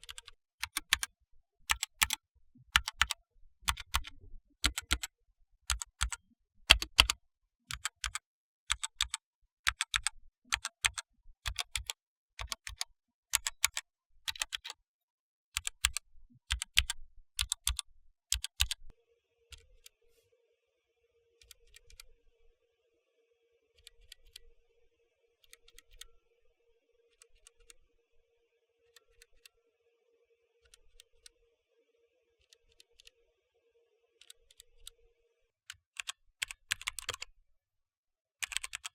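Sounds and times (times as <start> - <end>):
mechanical keyboard key clicks: 2.8 - 5.1, 5.7 - 14.7, 15.6 - 18.8, 36.0 - 37.3, 38.4 - 38.9.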